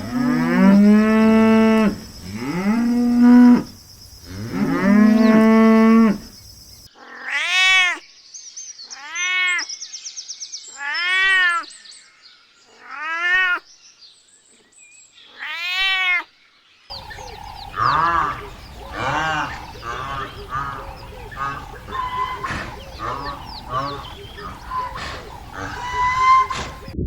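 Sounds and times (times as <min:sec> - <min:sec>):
background hiss: 0:00.0 - 0:06.9, 0:16.6 - 0:27.0
short animal calls: 0:16.9 - 0:27.0.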